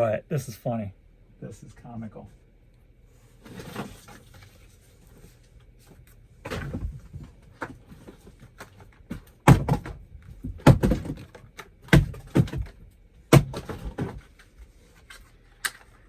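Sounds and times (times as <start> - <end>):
heavy thunks of items dropped: 6.4 - 14.4.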